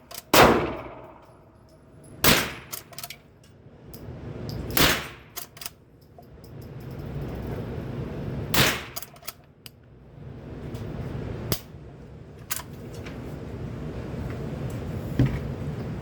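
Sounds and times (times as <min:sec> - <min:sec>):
steady low rumble: 0:00.0 - 0:08.8
rifle shots cracking: 0:00.3 - 0:01.4, 0:02.2 - 0:02.9.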